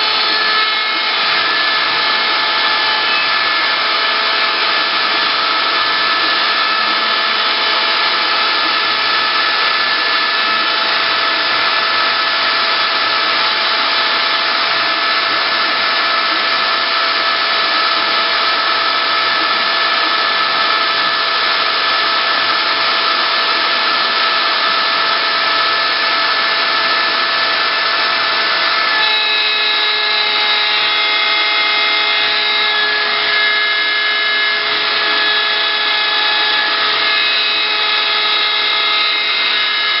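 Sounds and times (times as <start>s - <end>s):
wood router whining: 0.0s - 40.0s.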